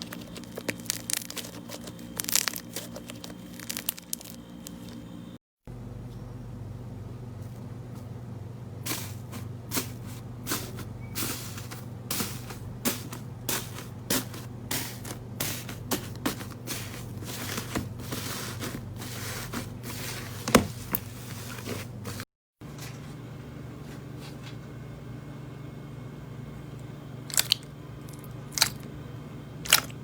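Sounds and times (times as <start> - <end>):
slime popping and crackling: 0.0 - 4.8
steady low hum: 0.0 - 30.0.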